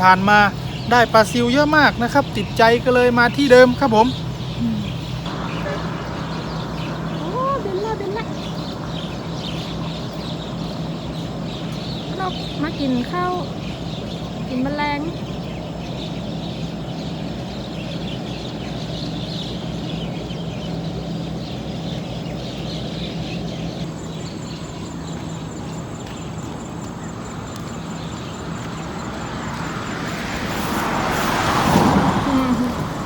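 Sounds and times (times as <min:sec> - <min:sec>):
vehicle passing: 0:00.0 - 0:15.6, 0:27.1 - 0:33.0
low engine hum: 0:00.0 - 0:33.0.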